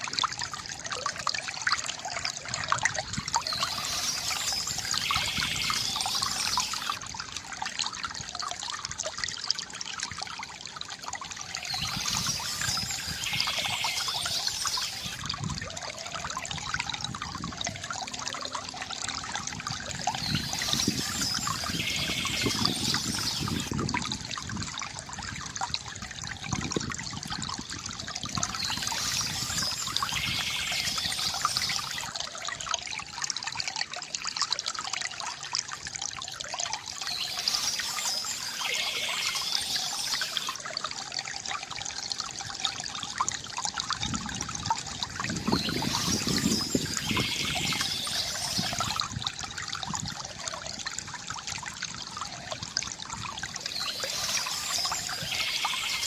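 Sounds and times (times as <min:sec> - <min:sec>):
water trickling from fountain: 0:00.0 - 0:56.0
birdsong chirping: 0:03.4 - 0:07.0, 0:11.6 - 0:15.2, 0:20.0 - 0:23.7, 0:28.4 - 0:32.1, 0:37.0 - 0:40.6, 0:45.4 - 0:49.0, 0:53.6 - 0:56.0.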